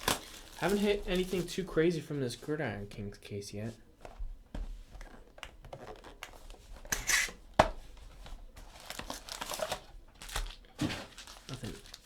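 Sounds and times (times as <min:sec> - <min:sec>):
packaging rustling and tearing: 0:00.0 - 0:01.7, 0:05.0 - 0:07.4, 0:08.0 - 0:12.0.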